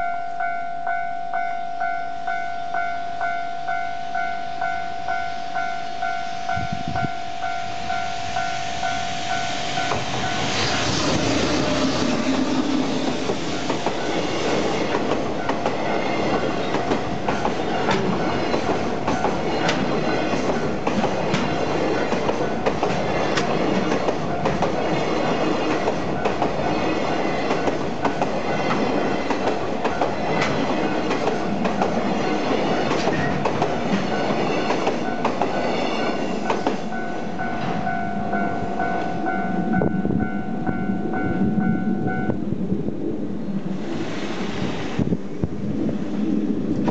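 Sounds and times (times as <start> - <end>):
level-crossing warning bell: 0.0 - 10.8, 13.5 - 14.7, 15.3 - 27.8, 28.4 - 42.5
train wheels clattering over rail joints: 9.8 - 37.0.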